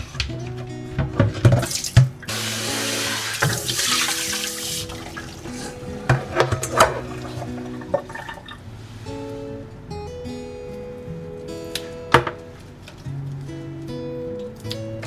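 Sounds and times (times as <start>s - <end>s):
soft background music: 0.0s - 15.0s
kitchen tap running: 0.1s - 8.7s.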